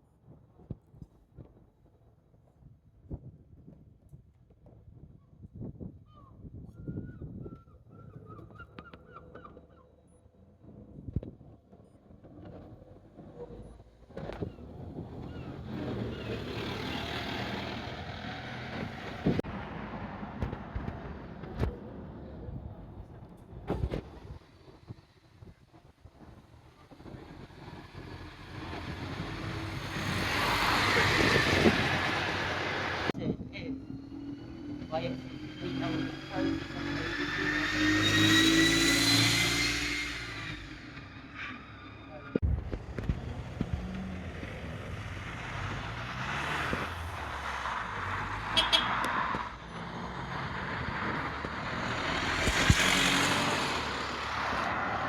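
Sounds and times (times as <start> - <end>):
road vehicle passing: 8.2 - 55.0.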